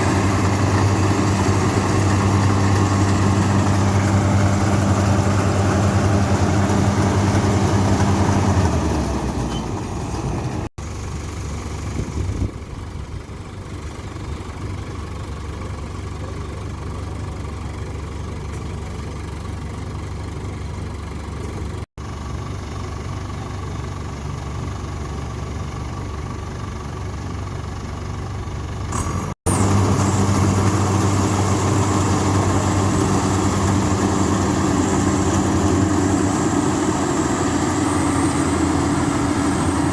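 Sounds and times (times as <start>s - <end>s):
large engine humming: 0.0s - 39.9s
rough engine rumble: 0.0s - 39.9s.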